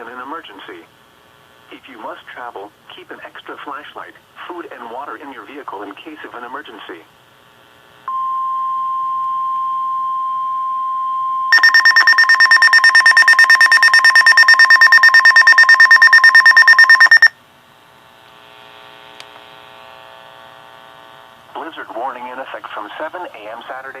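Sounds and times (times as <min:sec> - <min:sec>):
steady alarm tone: 0:08.1 - 0:17.3
rapid alert beeping: 0:11.5 - 0:17.3.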